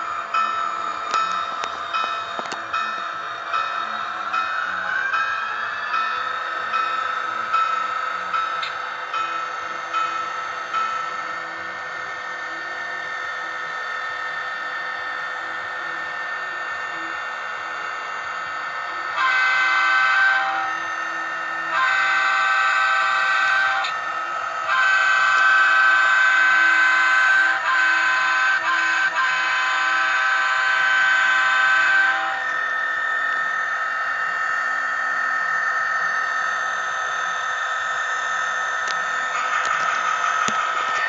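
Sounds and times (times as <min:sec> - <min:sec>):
locomotive horn blasts: 0:19.2 - 0:20.8, 0:21.7 - 0:24.0, 0:24.6 - 0:32.5
diesel engine sound through speaker: 0:38.8 - 0:41.0.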